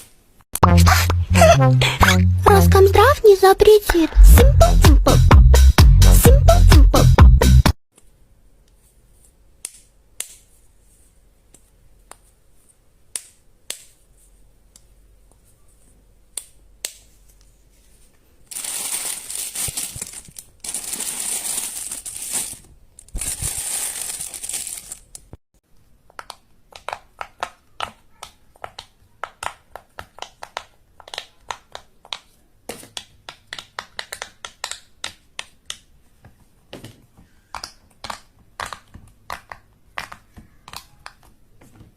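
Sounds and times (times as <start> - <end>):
crinkling crushing noise: 17.0 - 35.6.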